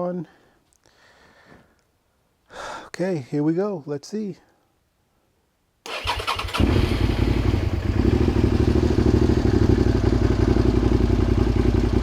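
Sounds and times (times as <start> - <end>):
motorcycle engine idling: 6.0 - 12.0.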